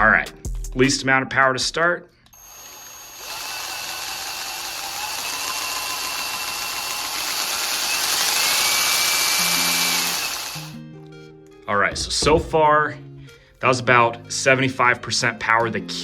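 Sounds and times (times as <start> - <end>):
drill whine: 2.4 - 10.8
power drill spinning plastic puzzle: 2.4 - 10.8.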